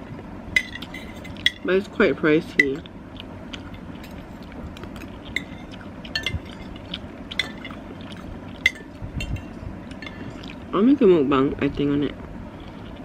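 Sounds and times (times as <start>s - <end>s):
spoon clinking against bowl: 0.6s - 1.7s, 5.4s - 7.8s, 8.6s - 10.2s
soup sloshing: 3.5s - 10.7s.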